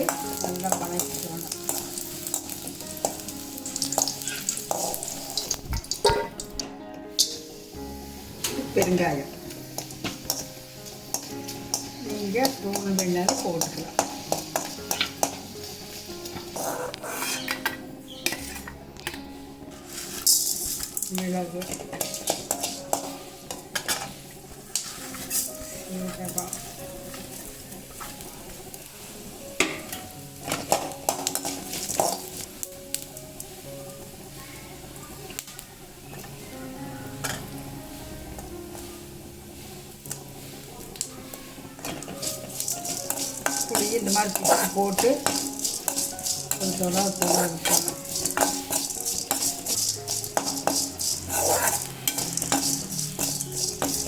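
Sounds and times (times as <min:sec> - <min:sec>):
spoon scraping and clinking pan: 0:00.0 - 0:06.5, 0:09.8 - 0:19.2, 0:19.8 - 0:27.2, 0:29.6 - 0:32.5, 0:41.8 - 0:54.0
light sizzle: 0:00.0 - 0:54.0
soft background music: 0:00.0 - 0:54.0.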